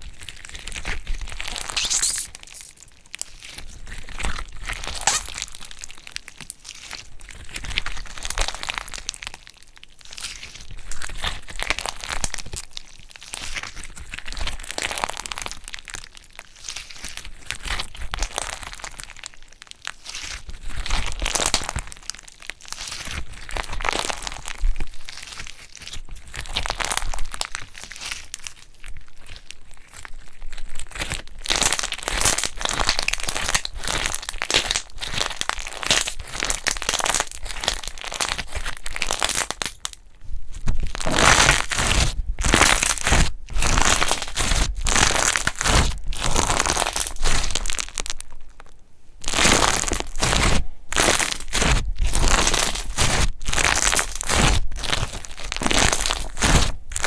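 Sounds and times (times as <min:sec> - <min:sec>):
hands squeezing crackling slime: 0:01.6 - 0:02.8, 0:04.9 - 0:05.6, 0:40.9 - 0:48.3, 0:49.2 - 0:57.0.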